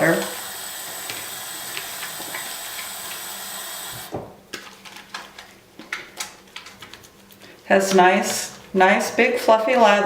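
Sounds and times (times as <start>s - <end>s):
water running from a tap: 0.0s - 4.1s.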